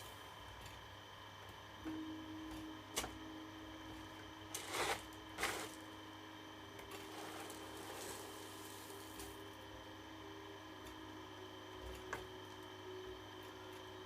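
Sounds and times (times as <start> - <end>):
small motors whining: 3.8 - 14.0.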